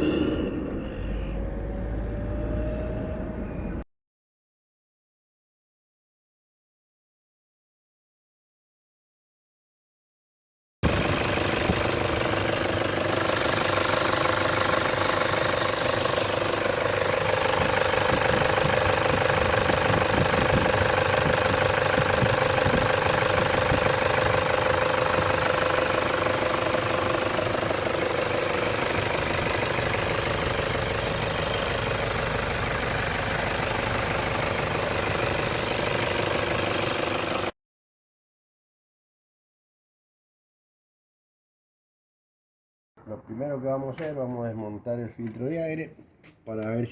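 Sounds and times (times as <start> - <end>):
diesel engine running: 0.0 - 3.8, 10.8 - 37.5.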